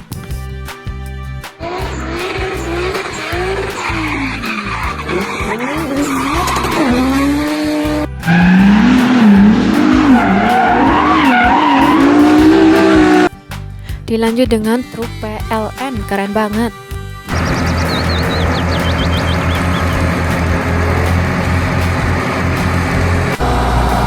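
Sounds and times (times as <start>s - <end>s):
music with steady beat: 0.0s - 23.2s
race car engine revving: 1.6s - 13.3s, 17.3s - 24.0s
tyre squeals: 1.8s - 7.6s, 8.3s - 13.3s.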